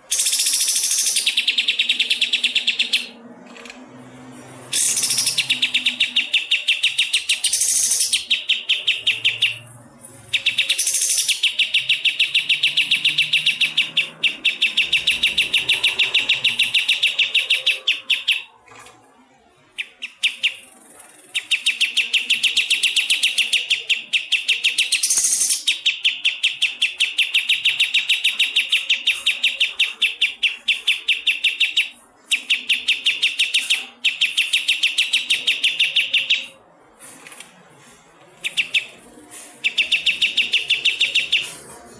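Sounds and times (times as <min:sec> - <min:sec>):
bird calling rapid high notes: 0:04.7 - 0:09.7, 0:10.3 - 0:18.5.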